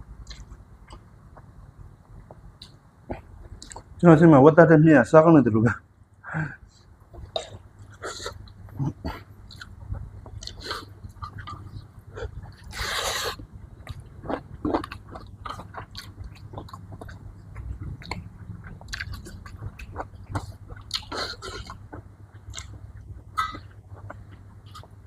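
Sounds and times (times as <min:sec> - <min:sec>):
person chewing food: 0:00.2 - 0:03.9, 0:07.1 - 0:25.0.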